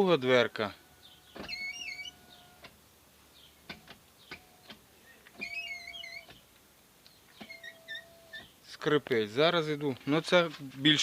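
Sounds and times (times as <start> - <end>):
window regulator squeaking: 1.2 - 2.8, 3.7 - 6.4, 7.4 - 8.6.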